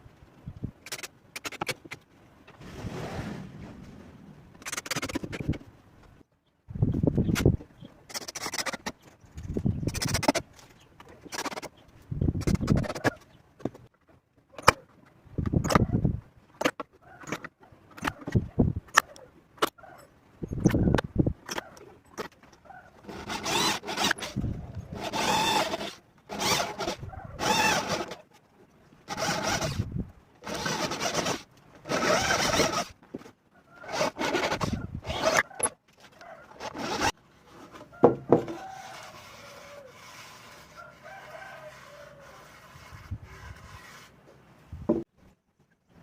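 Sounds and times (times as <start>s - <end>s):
hand saw cutting wood: 9.9s - 10.4s, 23.0s - 28.2s, 29.1s - 33.0s, 33.8s - 35.7s, 36.5s - 37.2s, 38.4s - 44.2s.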